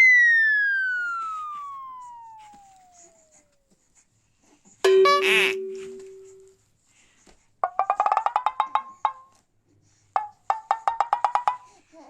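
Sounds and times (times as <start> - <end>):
twanging tone: 4.9 - 6.5.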